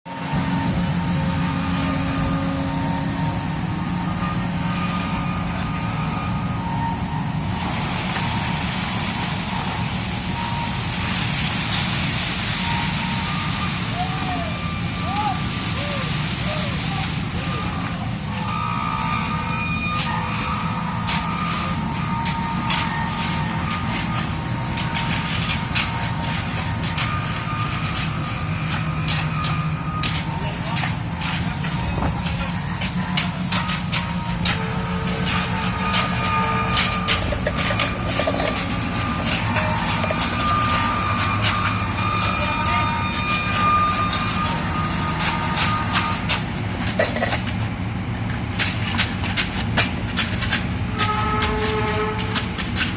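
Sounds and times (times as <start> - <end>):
heavy machinery engines droning: 0.1 - 52.9
thin steady whine: 0.1 - 52.9.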